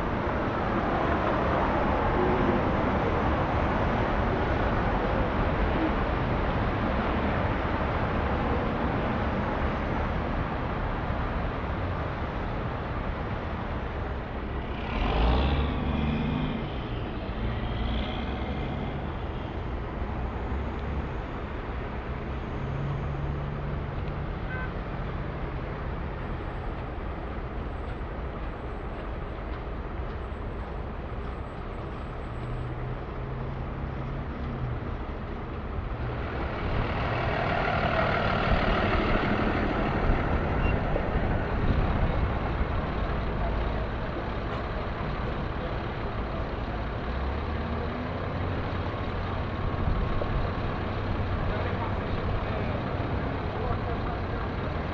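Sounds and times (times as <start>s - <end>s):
passing vehicles: 0.0s - 54.9s
loud vehicle passing close: 36.1s - 41.9s.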